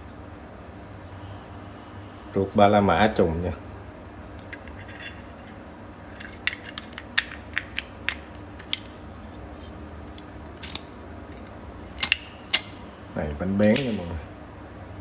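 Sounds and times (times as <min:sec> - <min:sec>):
steady low hum: 0:00.0 - 0:15.0
lighter case metallic clicks: 0:13.7 - 0:14.1.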